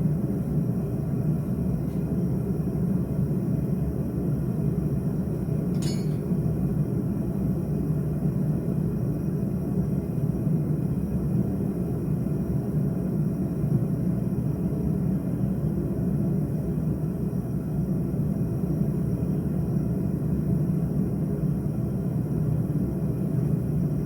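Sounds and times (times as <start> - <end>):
light metallic clink: 5.7 - 6.3.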